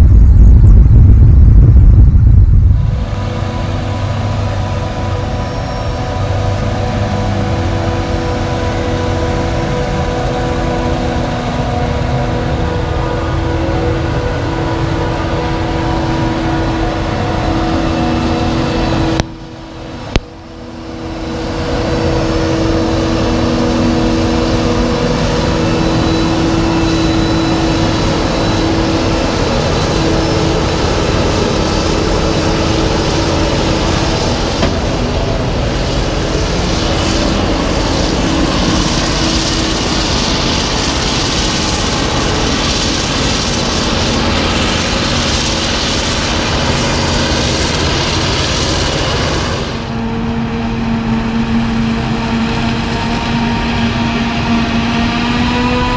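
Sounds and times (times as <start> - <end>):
diesel machinery droning: 0.0 - 55.9
hiss: 22.9 - 50.0.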